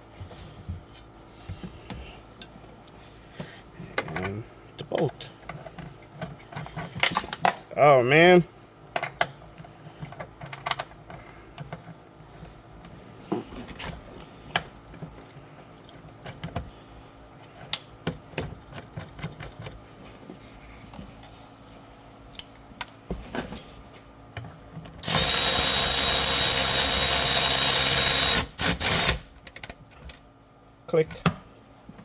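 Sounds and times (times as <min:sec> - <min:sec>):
clicks and knocks of parts handled: 0:04.0 - 0:07.7, 0:08.9 - 0:12.0
power drill whining: 0:25.0 - 0:29.2.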